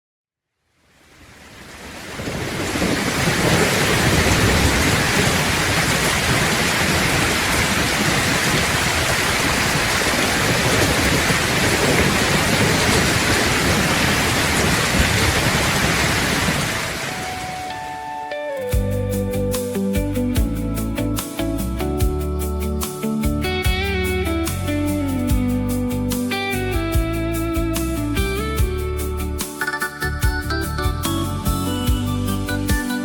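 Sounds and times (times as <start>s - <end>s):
heavy rain falling: 0.9s - 18.2s
low rumble of thunder: 1.8s - 17.7s.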